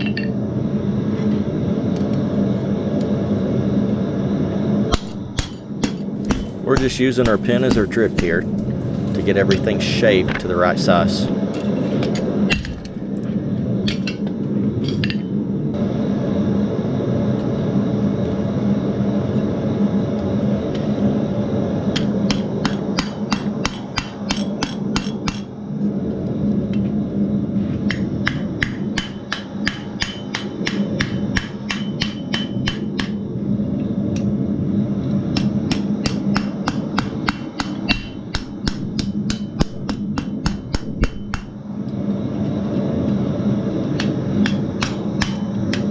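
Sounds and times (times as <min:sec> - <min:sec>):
hammer striking steel on anvil: 0:06.2 - 0:10.0, 0:35.7 - 0:41.5, 0:44.0 - 0:45.8
steady low hum: 0:06.2 - 0:13.3.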